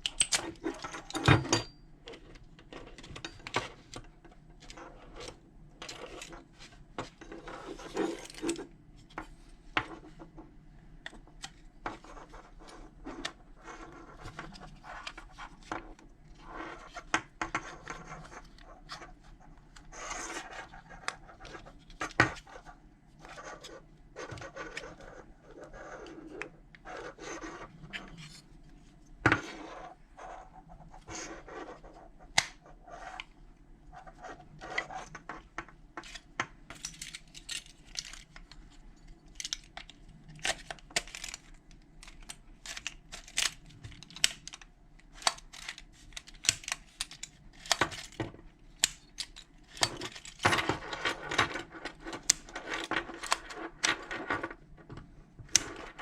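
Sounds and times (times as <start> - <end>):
metal lock parts clicking: 0.0 - 1.8, 36.7 - 44.6, 45.2 - 48.2.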